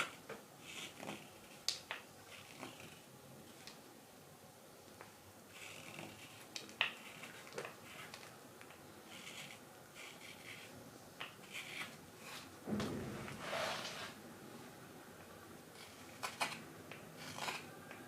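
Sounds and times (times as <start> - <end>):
knife scraping wood: 15.8 - 16.6, 17.2 - 17.7.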